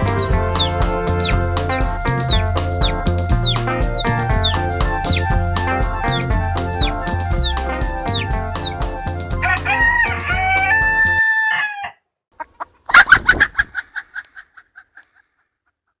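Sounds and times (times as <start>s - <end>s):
music: 0.0s - 11.2s
chicken clucking: 12.4s - 15.1s.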